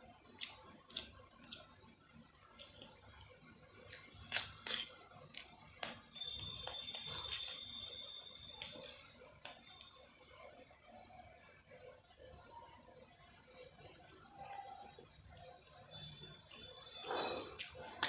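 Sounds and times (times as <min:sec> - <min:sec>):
steady high-pitched tone: 0:05.9 - 0:18.0.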